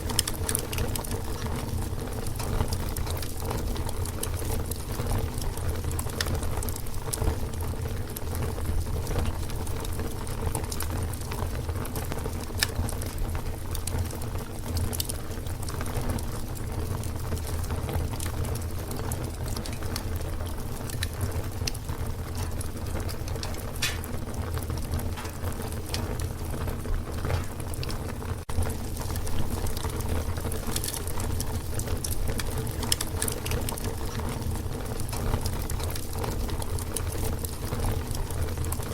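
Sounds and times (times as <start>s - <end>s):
fire burning with crackles: 0.0s - 38.9s.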